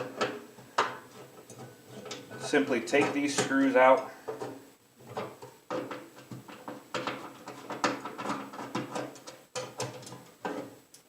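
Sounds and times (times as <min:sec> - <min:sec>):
tool and screws knocking on metal: 0:00.0 - 0:10.8.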